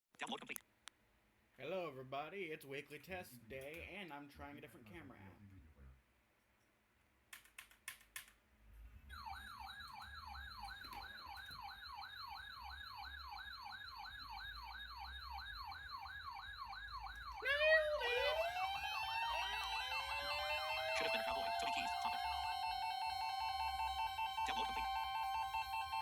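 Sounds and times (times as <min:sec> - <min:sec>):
siren yelping and wailing: 0:09.1 - 0:26.0.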